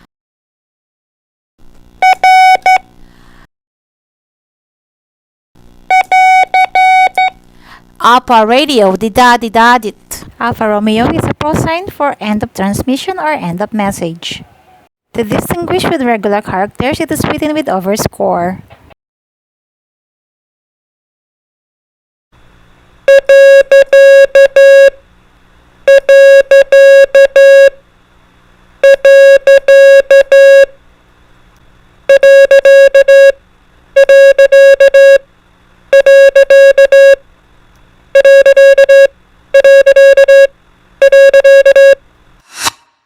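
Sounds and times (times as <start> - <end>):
morse code beeping tone: 2.0 - 2.8, 5.9 - 7.4, 23.1 - 25.0, 25.9 - 27.8, 28.8 - 30.7, 32.1 - 33.4, 34.0 - 35.2, 35.9 - 37.2, 38.2 - 42.0.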